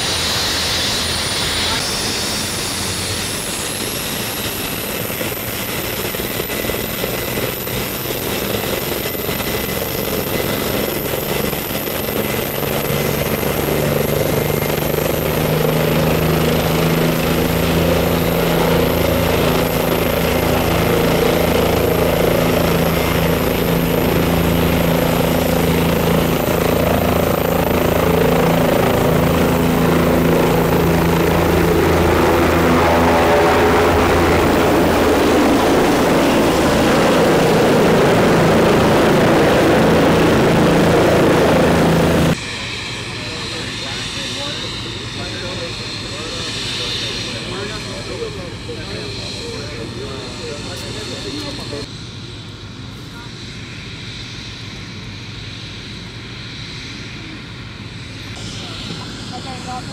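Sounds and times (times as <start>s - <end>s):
helicopter rotor beat: 0.0s - 59.9s
helicopter turbine whine: 0.0s - 59.9s.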